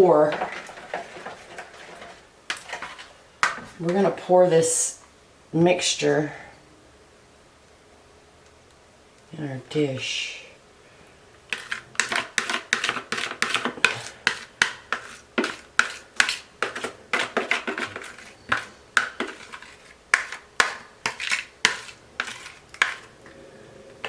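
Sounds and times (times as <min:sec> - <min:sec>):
utensil scraping a mixing bowl: 0:00.0 - 0:04.7, 0:11.5 - 0:24.0.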